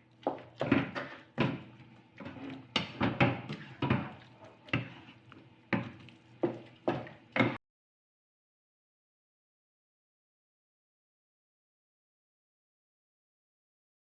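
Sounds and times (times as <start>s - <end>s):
spatula knocking on pan: 0.2s - 7.6s.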